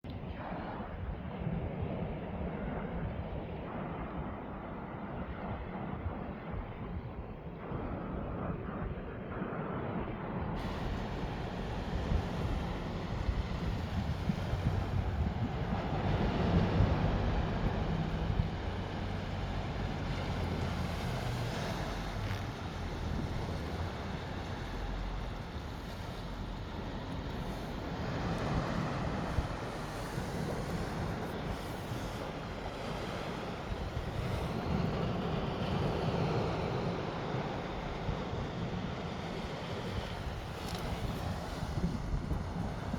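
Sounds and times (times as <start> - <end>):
wind rumbling on microphone: 0.0 - 42.9
sea waves washing on shore: 10.4 - 42.9.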